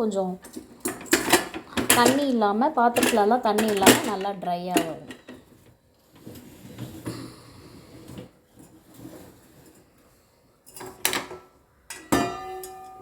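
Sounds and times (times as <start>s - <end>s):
dishes knocking and rattling: 0.4s - 5.4s, 10.8s - 13.0s.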